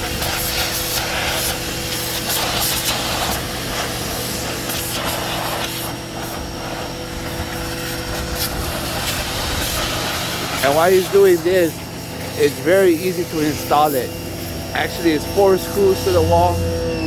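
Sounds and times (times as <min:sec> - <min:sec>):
pressure washer pump humming: 0:00.0 - 0:17.0
water jet hissing: 0:00.0 - 0:17.0.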